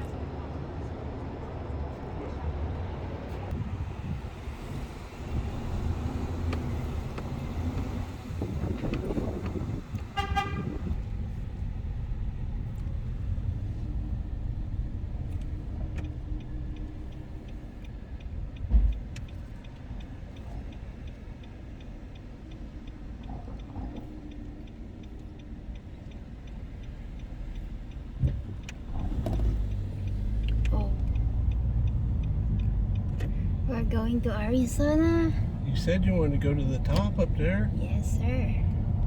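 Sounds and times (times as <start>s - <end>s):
car engine and road rumble: 0.0s - 39.0s
light even ticking: 5.2s - 39.0s.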